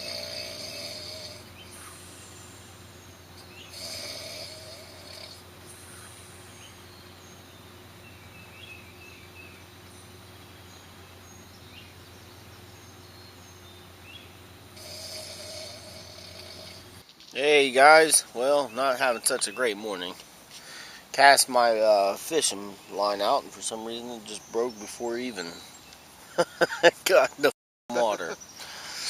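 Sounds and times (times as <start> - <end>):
person snoring: 0.0 - 2.8, 3.7 - 6.1, 14.8 - 17.0
faint steady hum: 0.0 - 27.3.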